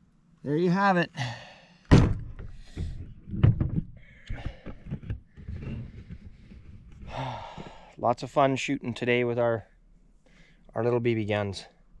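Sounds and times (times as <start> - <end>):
sharp thump: 1.9 - 3.9.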